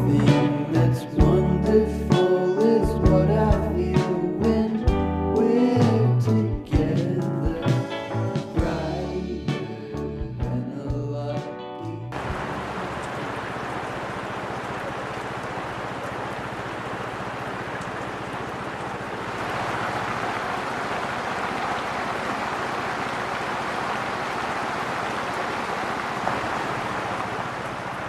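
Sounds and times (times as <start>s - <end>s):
steady rain: 12.1s - 28.0s.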